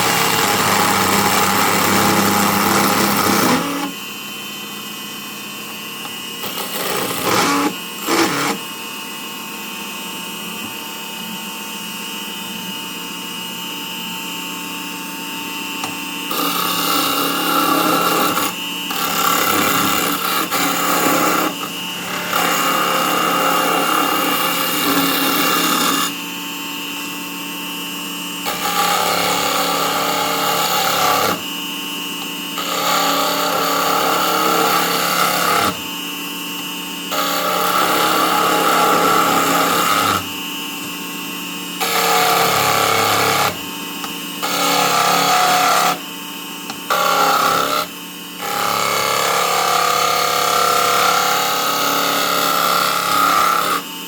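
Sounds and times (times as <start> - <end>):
tool scraping wood: 0.0 - 4.0, 6.0 - 8.7, 15.8 - 26.2, 28.4 - 31.5, 32.2 - 35.9, 36.6 - 41.0, 41.8 - 46.0, 46.7 - 53.9
turning tool rasping wood: 0.0 - 4.0, 6.0 - 8.7, 15.8 - 26.2, 28.4 - 31.5, 32.2 - 35.9, 37.1 - 40.9, 41.8 - 46.0, 46.7 - 53.9
wood lathe motor whine: 0.0 - 54.0.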